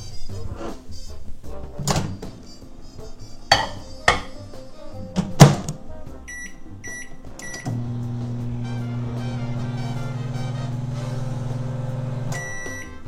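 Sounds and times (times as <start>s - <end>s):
short electronic beeps: 12.4s - 13.0s.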